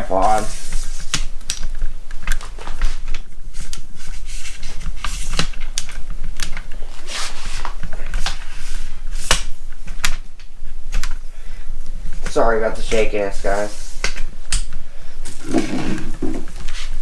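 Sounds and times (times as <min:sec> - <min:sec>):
low steady hum: 0:00.0 - 0:17.0
rustling: 0:15.3 - 0:17.0.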